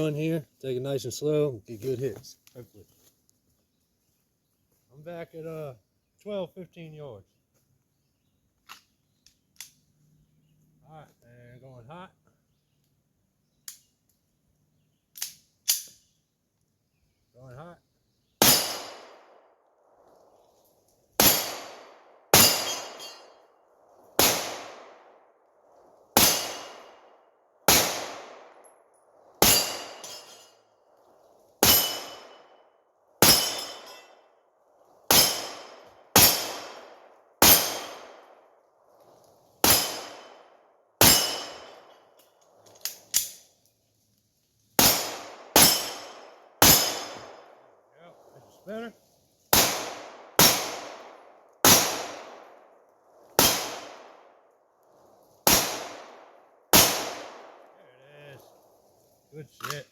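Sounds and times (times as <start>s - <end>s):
gunshots: 18.4s - 19.3s, 21.2s - 23.2s, 24.2s - 25.0s, 26.2s - 27.0s, 27.7s - 28.6s, 29.4s - 30.2s, 31.6s - 32.4s, 33.2s - 34.0s, 35.1s - 38.3s, 39.6s - 40.4s, 41.0s - 41.7s, 44.8s - 47.5s, 49.5s - 52.5s, 53.4s - 54.2s, 55.4s - 57.6s
metallic ring of steel targets: 22.4s - 23.4s, 29.4s - 30.6s, 31.6s - 32.4s, 33.2s - 34.2s, 41.0s - 42.0s, 45.6s - 47.4s.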